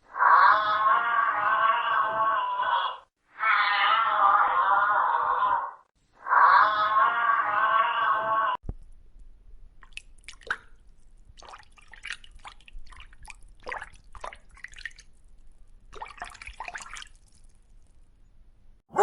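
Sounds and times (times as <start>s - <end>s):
water dripping and popping: 8.6s - 18.8s.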